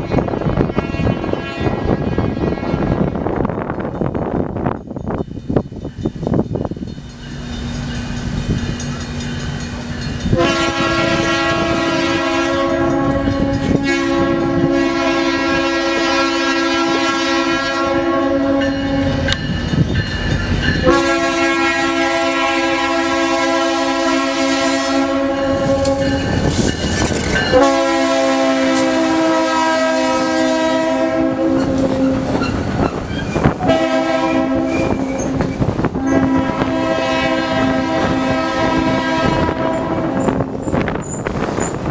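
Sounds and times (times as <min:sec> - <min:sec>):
locomotive air horn blasts: 0:00.0 - 0:03.2, 0:10.3 - 0:19.3, 0:20.8 - 0:26.3, 0:27.5 - 0:32.6, 0:33.4 - 0:40.4
train wheels clattering on rails: 0:03.2 - 0:17.5, 0:18.5 - 0:41.9.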